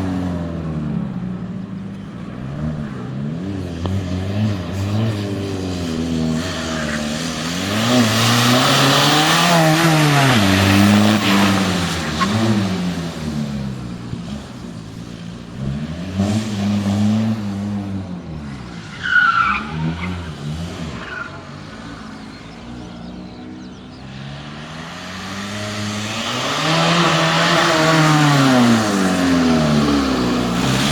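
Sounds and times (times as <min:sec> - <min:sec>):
diesel car engine revving: 0:00.0 - 0:30.9
tyres skidding: 0:00.0 - 0:30.9
high tyre squeal: 0:04.8 - 0:14.1, 0:18.2 - 0:30.9.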